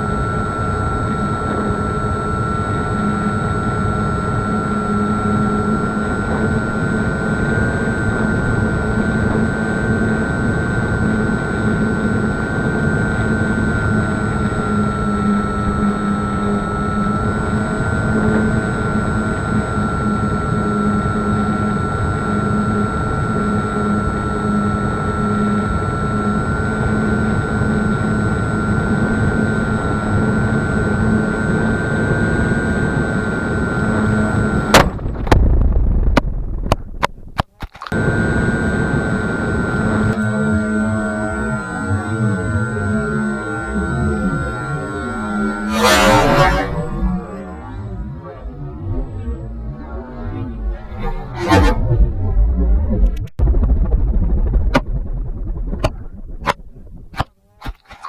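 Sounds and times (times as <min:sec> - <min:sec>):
propeller airplane drone: 0:00.0 - 0:37.3, 0:37.9 - 0:58.0.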